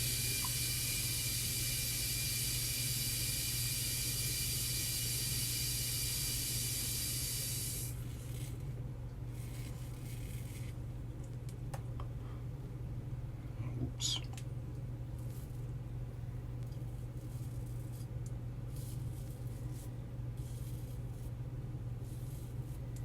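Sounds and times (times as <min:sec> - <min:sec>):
faucet water running into sink: 0:00.0 - 0:07.9.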